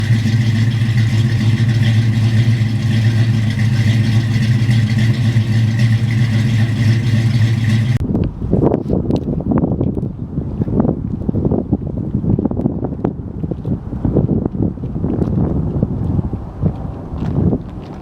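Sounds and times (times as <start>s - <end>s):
pickup truck engine idling: 0.0s - 8.0s.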